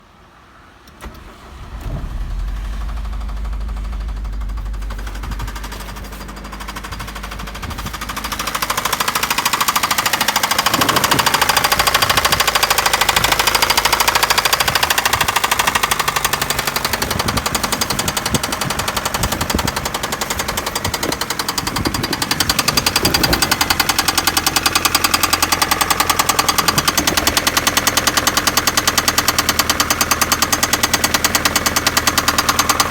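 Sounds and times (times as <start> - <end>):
car engine running: 0.9 - 32.9
rapid regular engine knock: 1.0 - 32.9.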